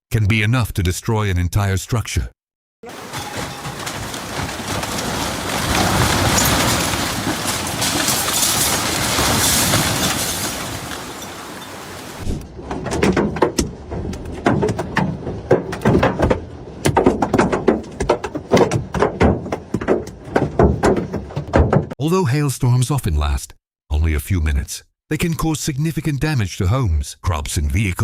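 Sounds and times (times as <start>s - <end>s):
hailstones pelting hard surfaces: 2.9s - 12.3s.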